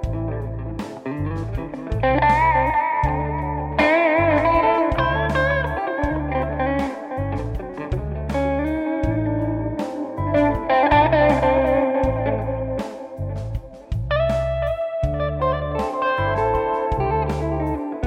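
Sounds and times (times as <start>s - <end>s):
backing track with bass and drums: 0.0s - 18.0s
electric guitar with vibrato: 0.0s - 18.0s.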